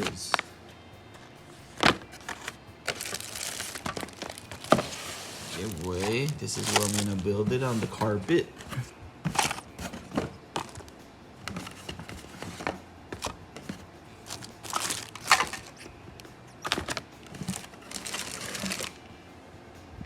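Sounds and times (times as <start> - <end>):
packaging rustling and crinkling: 1.8 - 15.9, 16.6 - 19.0.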